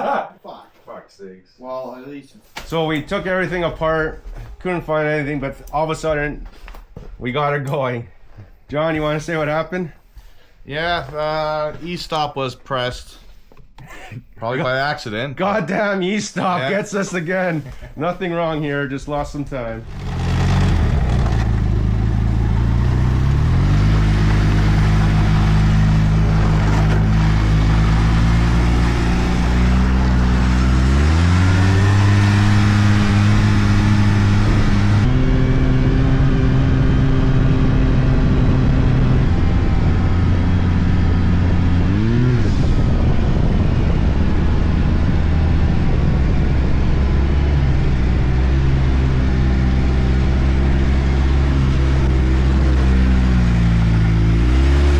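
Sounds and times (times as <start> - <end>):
snowmobile engine running: 19.4 - 54.9.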